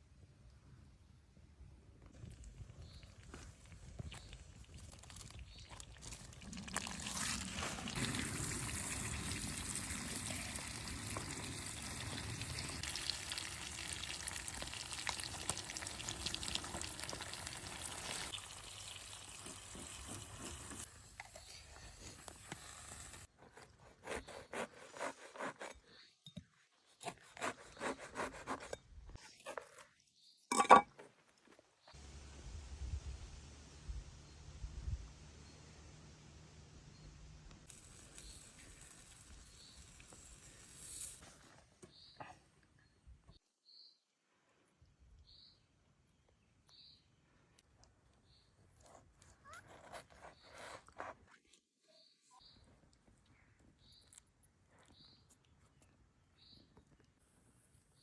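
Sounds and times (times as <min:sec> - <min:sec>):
food hissing in a pan: 0:22.1 - 0:23.3.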